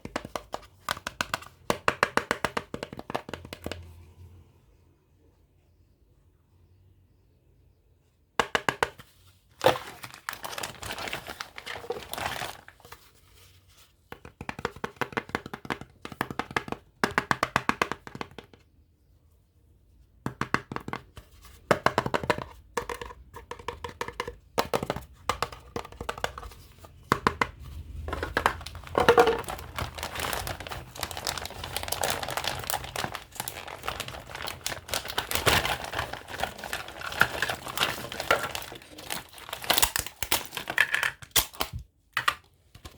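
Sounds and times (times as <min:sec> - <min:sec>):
packaging crinkling and tearing: 0:09.6 - 0:12.9, 0:28.1 - 0:41.8.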